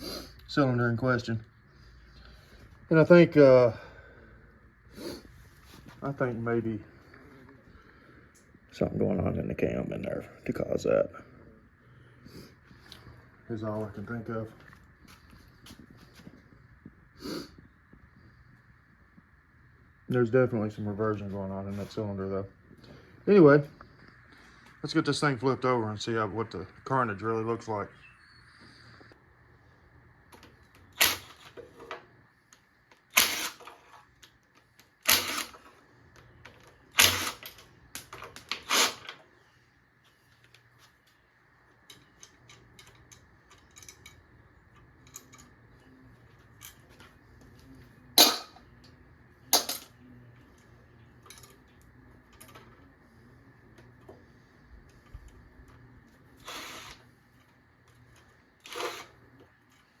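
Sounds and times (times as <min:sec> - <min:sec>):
faint hum: 0:00.0 - 1:00.0
metallic clanks of tools: 0:48.2 - 0:48.6, 0:49.6 - 0:49.9.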